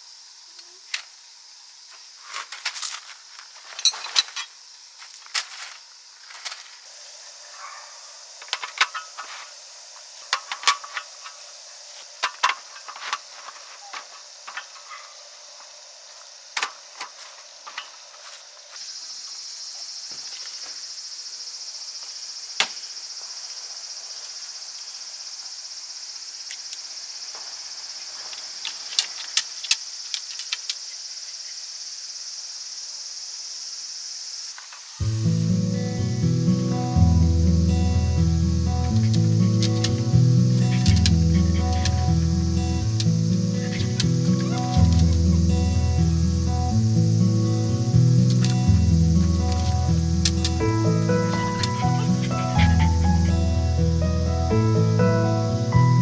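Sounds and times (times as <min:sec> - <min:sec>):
insects chirring: 0:00.0 - 0:56.0
music: 0:35.0 - 0:56.0.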